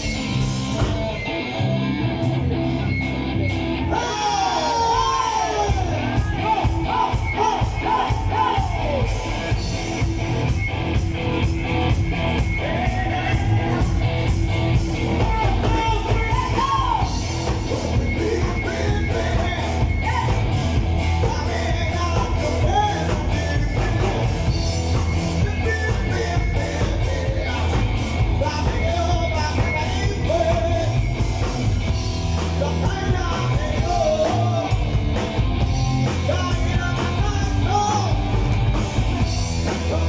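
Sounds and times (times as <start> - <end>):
band playing a song: 0.0 - 40.0
person singing: 3.8 - 9.7, 15.1 - 31.2, 32.4 - 35.0, 36.0 - 38.4.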